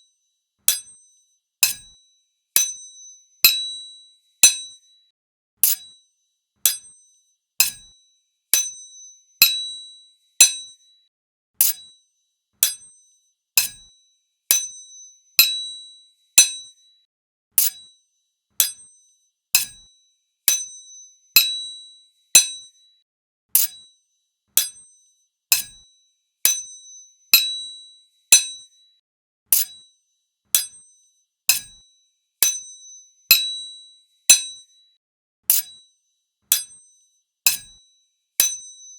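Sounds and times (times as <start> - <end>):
sword blades clashing: 35.5 - 35.7, 37.5 - 37.8.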